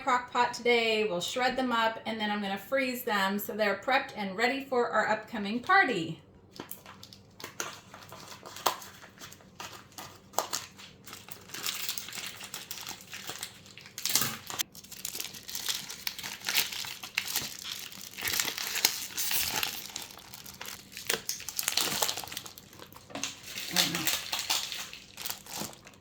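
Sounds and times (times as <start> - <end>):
packaging crinkling and rustling: 6.5 - 26.0.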